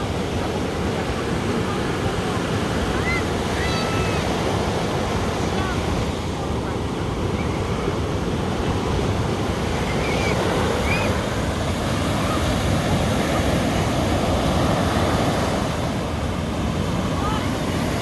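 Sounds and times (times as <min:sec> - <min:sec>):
ocean waves washing onto beach: 0:00.0 - 0:18.0.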